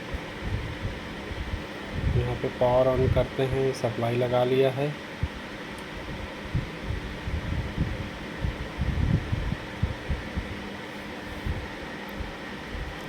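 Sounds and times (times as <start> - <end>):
faint steady hum: 0.0 - 13.0
soft low thumps: 6.1 - 10.7.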